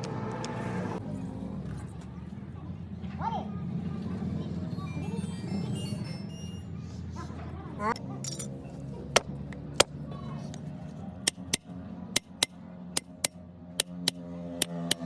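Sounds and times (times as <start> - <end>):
sharp clicks: 12.2 - 15.0.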